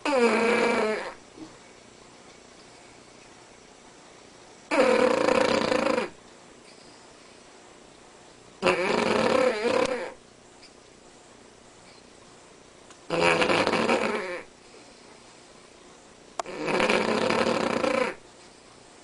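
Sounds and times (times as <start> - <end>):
dog snoring: 0.0 - 1.5, 4.7 - 6.2, 8.6 - 10.2, 13.1 - 15.0, 16.4 - 18.2.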